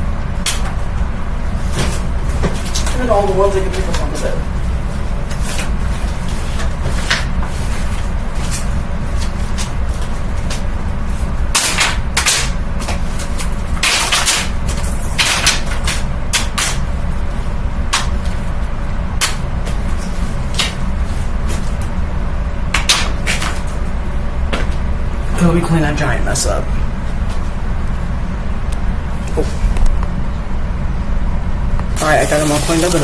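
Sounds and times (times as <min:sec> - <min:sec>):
box fan humming: 0:00.0 - 0:33.0
cards clattering against fan blades: 0:11.5 - 0:16.9.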